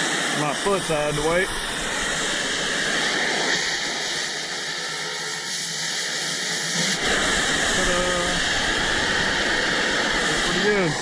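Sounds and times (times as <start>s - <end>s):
cutting torch hissing: 0.0s - 11.0s.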